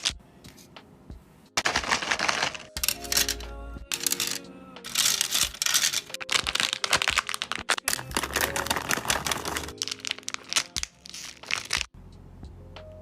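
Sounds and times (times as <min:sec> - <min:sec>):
background music: 0:00.0 - 0:13.0
packaging crinkling and clicking: 0:01.6 - 0:11.9.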